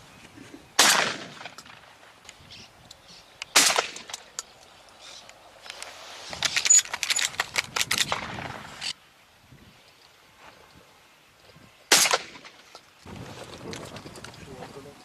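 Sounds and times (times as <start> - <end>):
single loud gunshot: 0.8 - 1.5, 3.6 - 4.1, 11.9 - 12.6.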